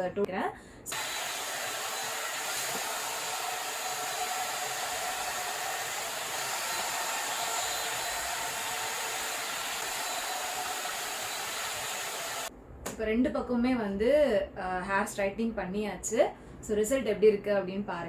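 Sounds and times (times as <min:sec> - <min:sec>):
hair dryer air rush with whine: 0:00.9 - 0:12.5.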